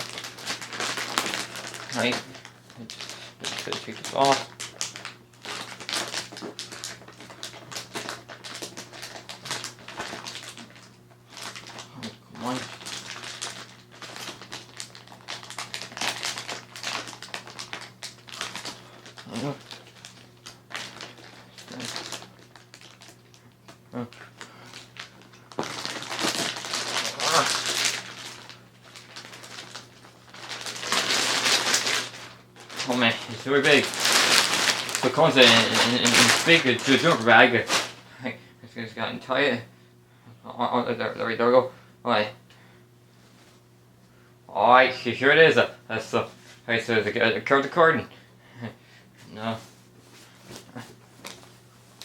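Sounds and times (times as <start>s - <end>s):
packaging rustling and crinkling: 0.0s - 38.0s, 49.6s - 52.0s.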